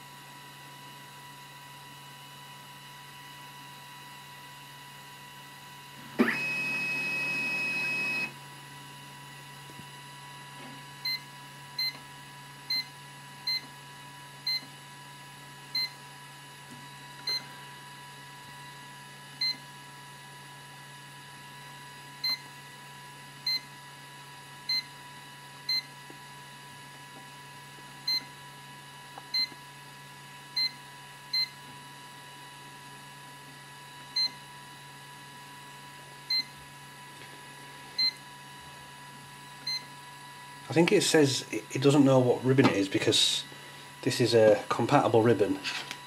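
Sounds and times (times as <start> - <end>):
faint electrical whine and hum: 0.0 - 46.0
long printer beep: 6.2 - 8.4, 11.0 - 12.0, 12.7 - 13.7, 15.8 - 16.0, 22.2 - 22.4, 24.7 - 24.9, 25.7 - 25.9, 30.6 - 31.6, 36.3 - 36.5, 38.0 - 38.2, 39.6 - 39.9.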